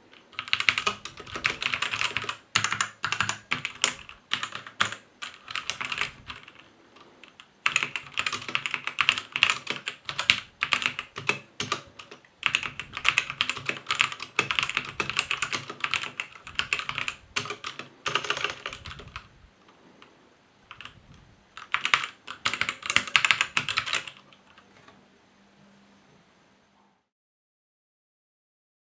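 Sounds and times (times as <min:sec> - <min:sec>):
mechanical keyboard typing: 0:00.1 - 0:19.3, 0:20.7 - 0:21.0, 0:21.6 - 0:25.0.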